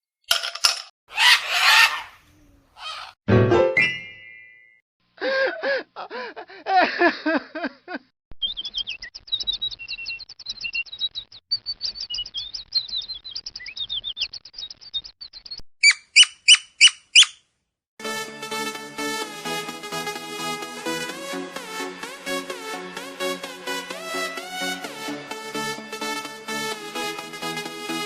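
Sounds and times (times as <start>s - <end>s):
songbird singing: 8.4s - 17.4s.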